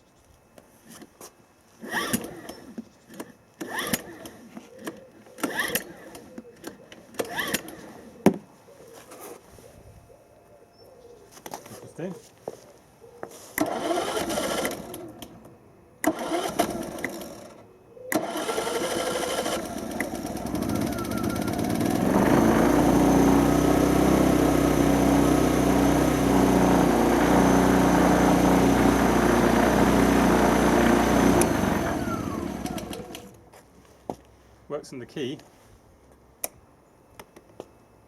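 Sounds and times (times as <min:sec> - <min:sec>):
generator engine running: 0:13.6 - 0:15.2, 0:18.2 - 0:33.4.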